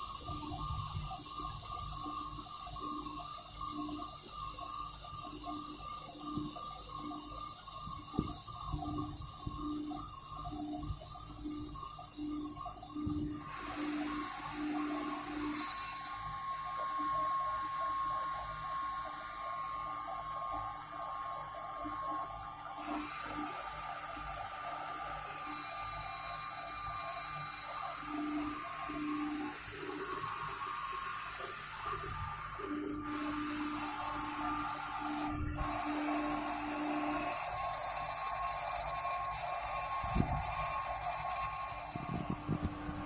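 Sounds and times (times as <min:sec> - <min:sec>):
router bit cutting: 0:00.0 - 0:43.0
router spindle whining: 0:00.0 - 0:43.0.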